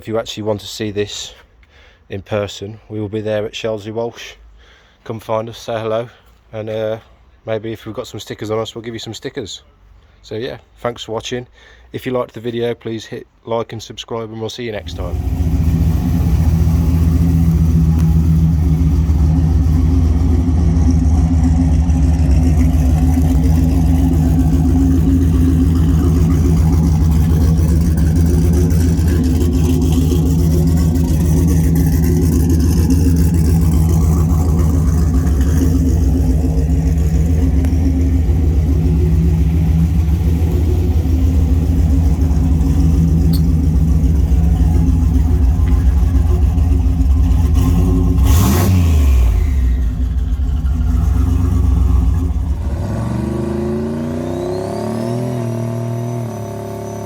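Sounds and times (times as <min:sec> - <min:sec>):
engine idling: 0:14.8 - 0:52.9.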